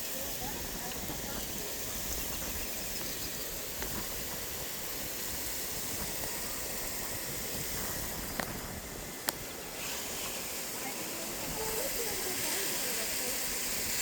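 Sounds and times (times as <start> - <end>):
background hiss: 0.0 - 14.0.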